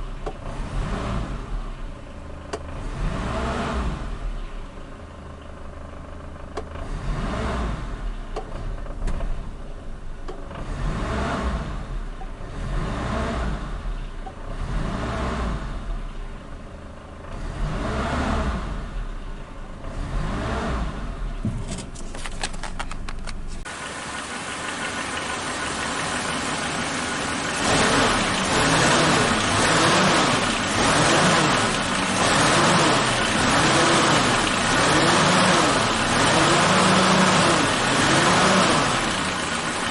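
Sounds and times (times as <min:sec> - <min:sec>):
steady engine with wavering pitch: 0:22.2 - 0:39.9
motorcycle engine revving: 0:24.2 - 0:39.9.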